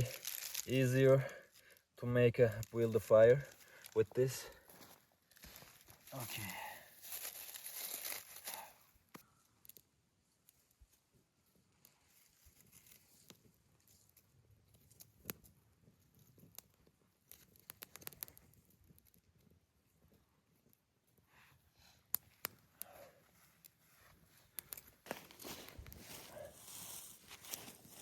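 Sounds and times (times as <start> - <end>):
twigs rustling: 0.0 - 19.4, 22.2 - 28.0
dry twigs clicking and cracking: 0.0 - 20.8, 21.8 - 28.0.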